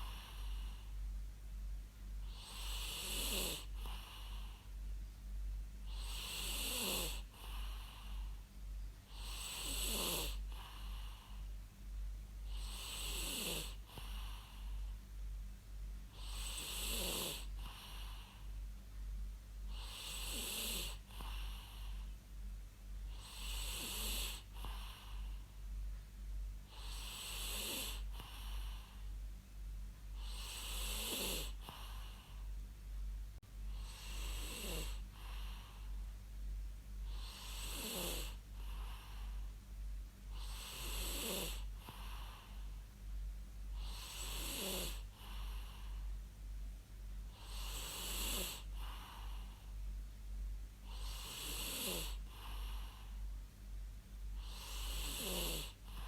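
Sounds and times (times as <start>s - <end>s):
steady low hum: 0.0s - 56.0s
person snoring: 2.3s - 4.6s, 5.9s - 8.3s, 9.1s - 11.4s, 12.5s - 14.8s, 16.2s - 18.4s, 19.7s - 22.0s, 23.2s - 25.3s, 26.7s - 29.0s, 30.2s - 32.4s, 33.7s - 35.9s, 37.1s - 39.4s, 40.3s - 42.6s, 43.8s - 46.0s, 47.4s - 49.5s, 50.9s - 53.0s, 54.4s - 56.0s.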